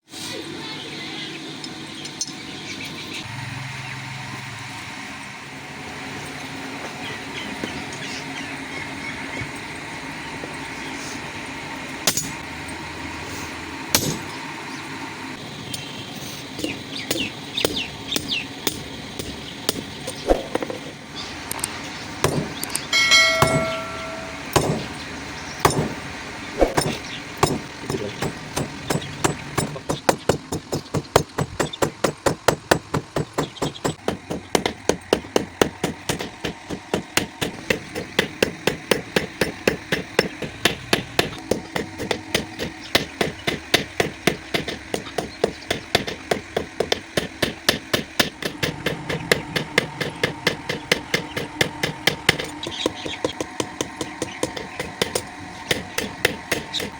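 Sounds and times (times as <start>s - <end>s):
hammer striking metal on anvil: 12.0s - 12.4s, 13.9s - 14.3s, 22.2s - 25.0s, 25.6s - 26.0s, 26.6s - 30.2s, 31.8s - 56.9s.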